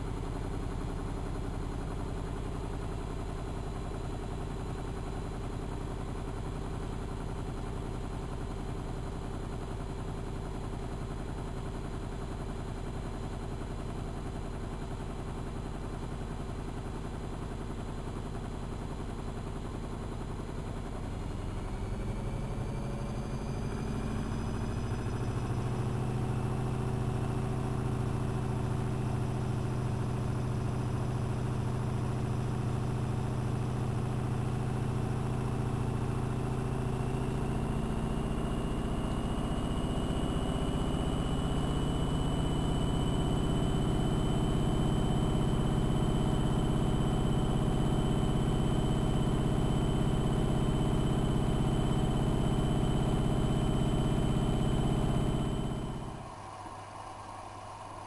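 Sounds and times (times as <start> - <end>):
motor rising whine: 21.3 - 32.0, 49.2 - 58.0
washing machine running: 43.6 - 58.0.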